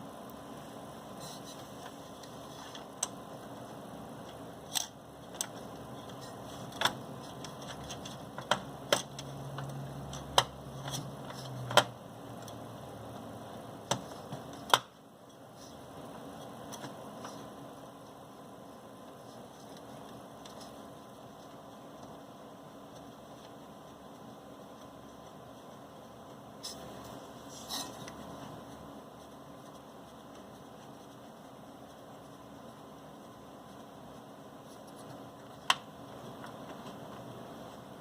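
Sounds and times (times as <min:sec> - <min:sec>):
computer hardware clicks and knocks: 0:04.6 - 0:12.6.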